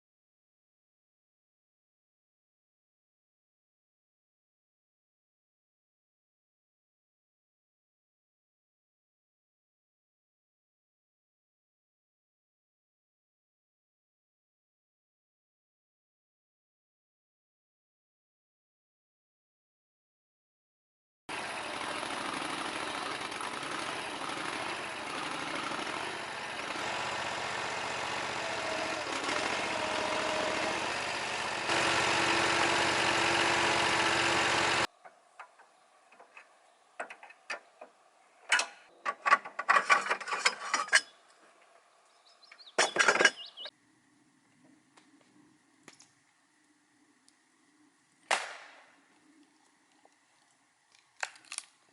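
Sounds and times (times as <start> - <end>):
small engine running: 21.3 - 34.9
sharp cracking and rustling: 48.2 - 51.9.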